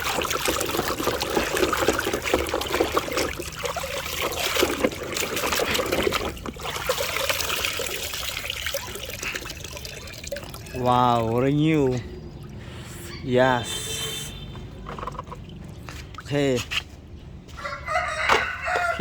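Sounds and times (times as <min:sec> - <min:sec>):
water trickling and splashing: 0:00.0 - 0:16.9.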